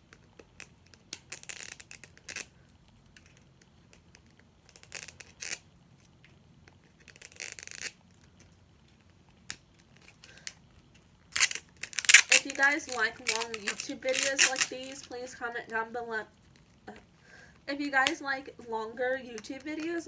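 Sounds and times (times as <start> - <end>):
plastic packaging crinkling and tearing: 0.4 - 2.6, 6.8 - 17.2, 17.9 - 20.0.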